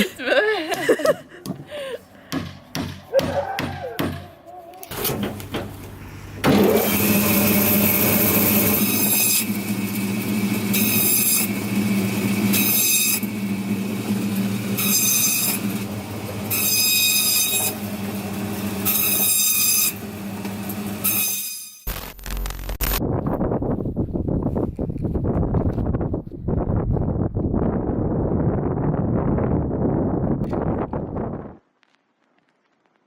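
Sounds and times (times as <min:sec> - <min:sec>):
atv engine running: 0:09.5 - 0:18.9.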